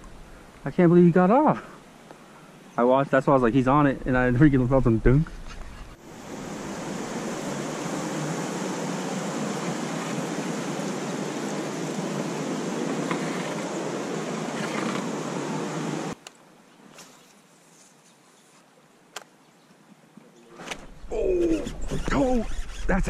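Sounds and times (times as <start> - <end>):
river water rushing: 6.0 - 16.2.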